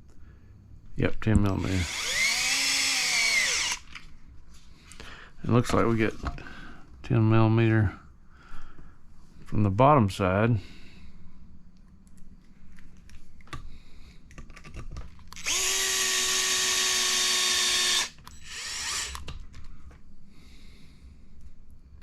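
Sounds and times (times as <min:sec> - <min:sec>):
electric screwdriver whining: 0:01.6 - 0:03.9, 0:15.3 - 0:19.3.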